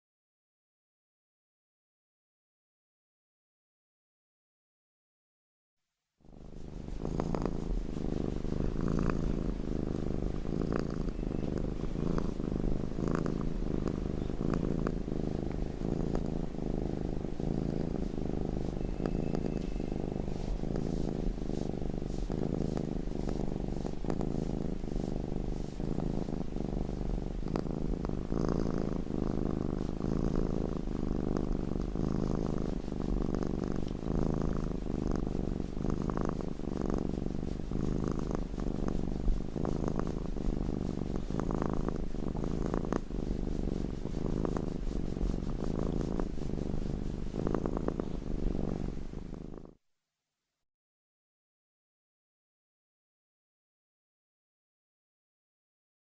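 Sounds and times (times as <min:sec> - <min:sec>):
cat purring: 0:06.2 - 0:49.8.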